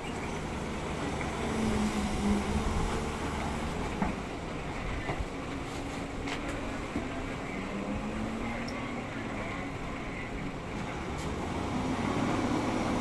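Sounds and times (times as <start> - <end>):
excavator diesel engine running: 0.0 - 13.0.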